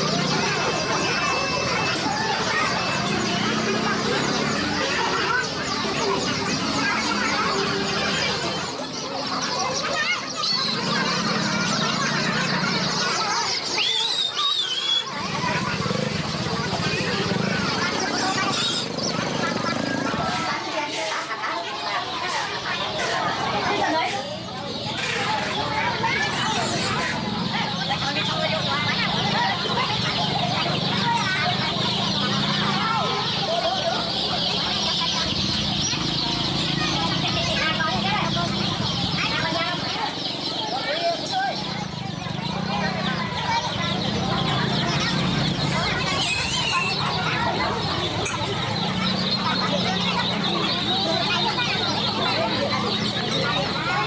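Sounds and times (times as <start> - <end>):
birds and chickens calling: 0.0 - 54.0.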